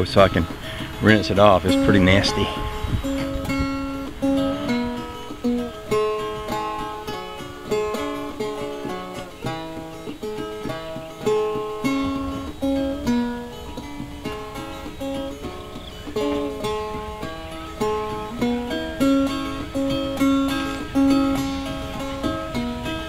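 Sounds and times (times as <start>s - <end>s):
acoustic guitar picking: 0.0s - 23.0s.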